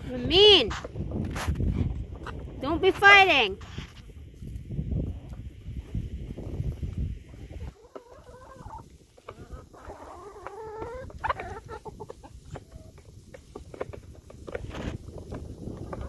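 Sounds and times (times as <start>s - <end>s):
chickens clucking: 0.3s - 16.0s
pecks and scratches: 0.4s - 4.1s.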